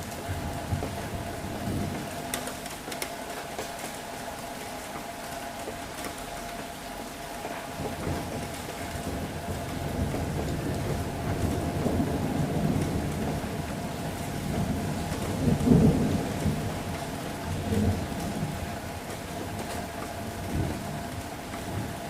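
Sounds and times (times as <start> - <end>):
thunder rumbling: 0.0 - 2.5, 7.6 - 22.0
steady rain: 0.0 - 22.0.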